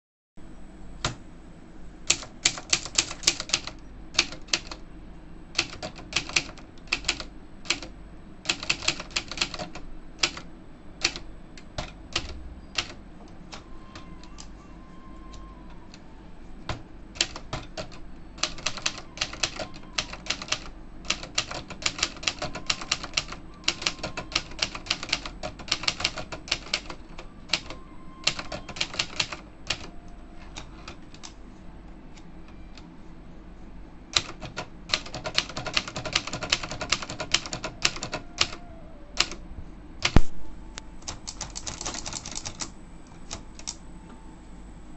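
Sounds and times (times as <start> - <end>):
manual typewriter typing: 2.1 - 4.8, 5.5 - 14.5, 16.7 - 31.3, 34.1 - 39.4, 40.0 - 40.3, 41.0 - 43.8.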